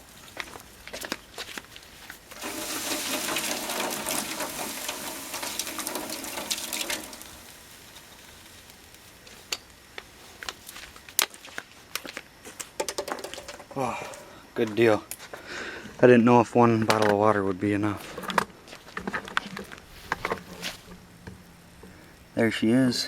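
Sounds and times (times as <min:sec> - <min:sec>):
water pouring from a bottle: 0:02.3 - 0:08.5.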